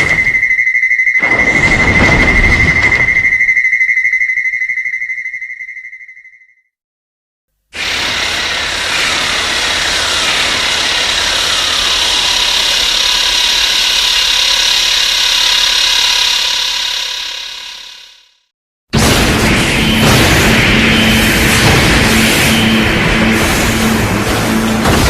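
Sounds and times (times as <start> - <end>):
steady high tone: 0.0 - 6.6, 19.4 - 24.2
harsh noisy monster rush: 7.8 - 17.9, 19.0 - 25.0.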